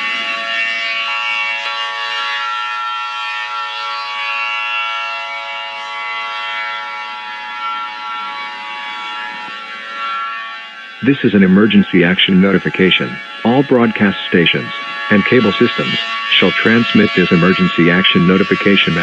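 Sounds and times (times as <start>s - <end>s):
siren-like alarm tones: 0.0s - 19.0s.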